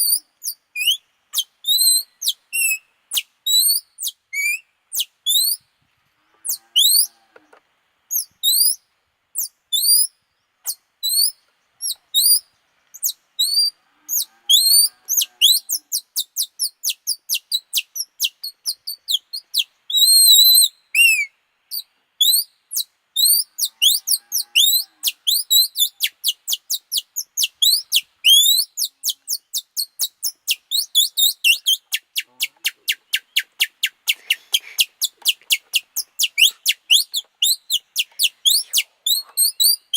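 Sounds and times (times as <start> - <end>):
plastic strip bird call chirps: 22.2 - 39.9.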